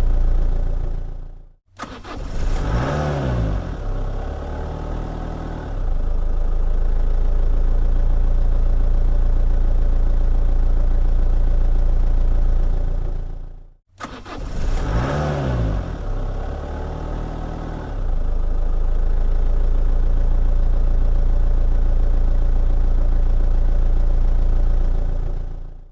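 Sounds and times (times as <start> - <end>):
car engine starting and revving: 0.0 - 7.0, 14.0 - 19.4.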